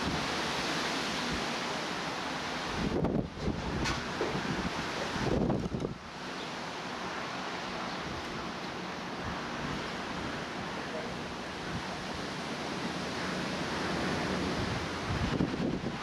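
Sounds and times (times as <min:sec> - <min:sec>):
wind blowing: 0:00.0 - 0:16.0.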